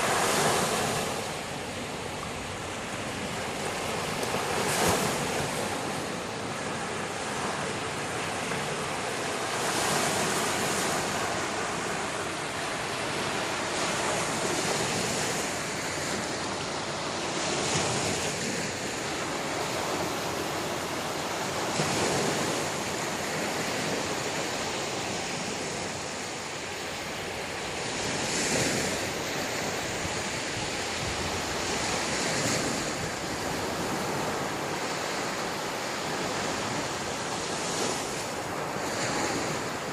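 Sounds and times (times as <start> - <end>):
sea waves breaking on beach: 0.0 - 39.9.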